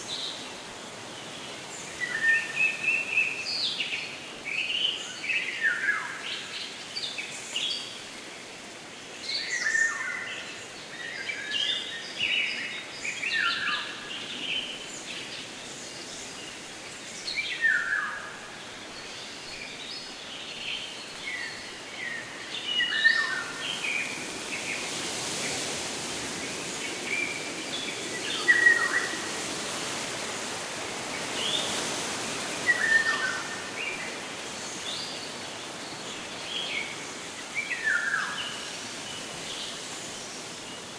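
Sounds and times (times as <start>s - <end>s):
songbirds chirping: 0.0s - 40.9s.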